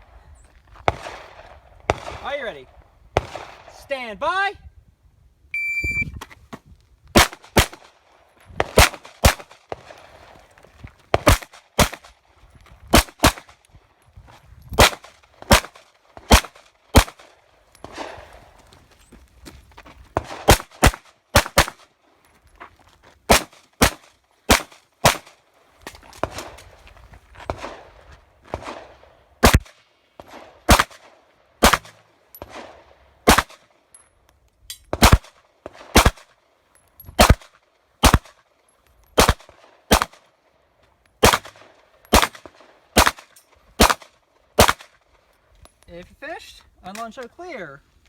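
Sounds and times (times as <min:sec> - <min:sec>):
shot timer beep: 0:05.6 - 0:06.2
pistol shots: 0:08.6 - 0:09.9, 0:14.8 - 0:18.2, 0:20.2 - 0:21.8, 0:23.3 - 0:25.3, 0:28.5 - 0:33.6, 0:35.0 - 0:36.3, 0:37.2 - 0:38.4, 0:39.2 - 0:40.2, 0:41.2 - 0:45.0.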